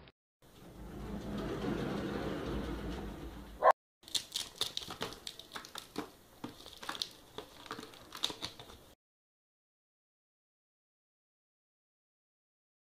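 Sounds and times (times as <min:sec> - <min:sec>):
crackling and crinkling clicks: 0:04.0 - 0:09.0.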